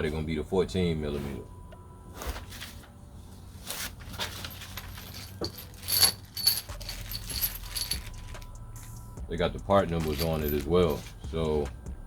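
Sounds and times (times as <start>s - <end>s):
metal hardware clinking and rattling: 4.0s - 8.6s, 9.9s - 11.1s.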